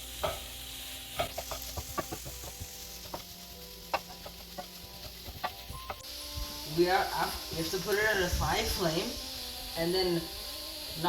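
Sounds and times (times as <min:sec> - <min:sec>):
vegetables sizzling in a frying pan: 0:00.0 - 0:11.0
utensil knocking against pan: 0:01.2 - 0:03.3.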